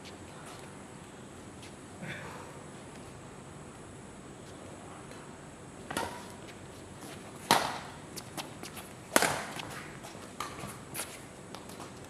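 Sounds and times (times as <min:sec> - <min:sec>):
rackets striking shuttlecock: 0:07.5 - 0:08.0, 0:09.1 - 0:09.7.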